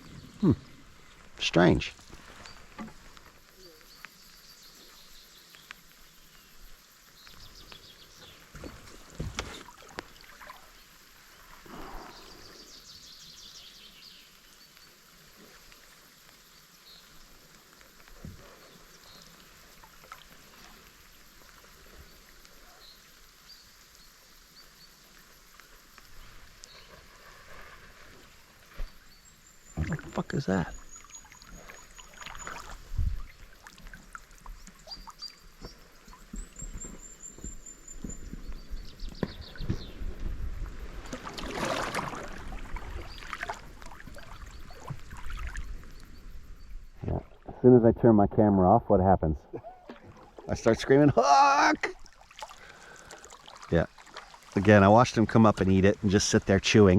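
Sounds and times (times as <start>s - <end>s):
light knocks in a canoe: 2.1s - 3.3s, 8.5s - 10.1s, 35.6s - 40.0s
water swishing: 8.2s - 12.8s, 26.2s - 37.0s, 39.6s - 47.5s, 49.7s - 55.4s.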